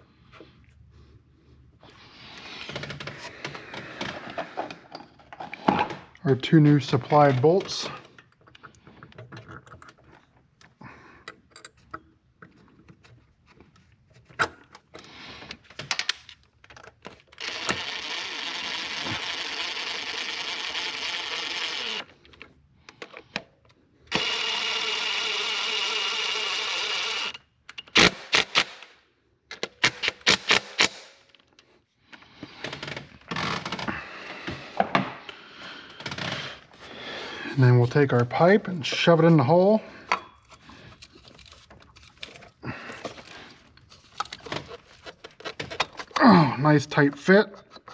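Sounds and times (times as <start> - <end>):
cordless power tool running: 17.4 - 22.1, 24.1 - 27.4.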